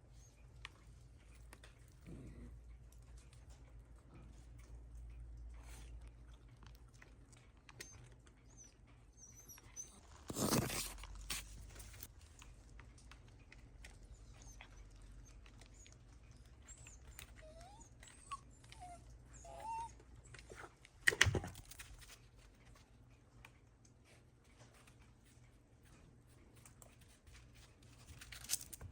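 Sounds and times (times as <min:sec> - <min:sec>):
light clicking and pattering: 0:00.0 - 0:28.9
dog whimpering: 0:07.7 - 0:10.8, 0:14.1 - 0:20.7.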